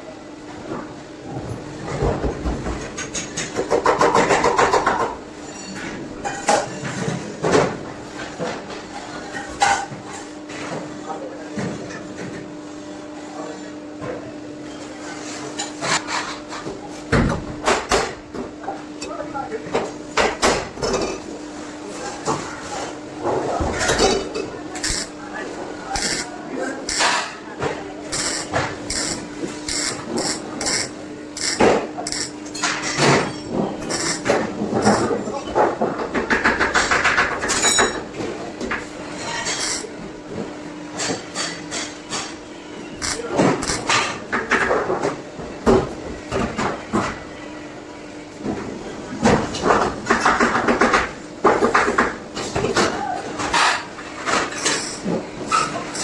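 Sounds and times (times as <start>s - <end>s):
steady machine hum: 24.0s - 35.3s, 42.6s - 44.0s
machine hum: 27.9s - 32.6s.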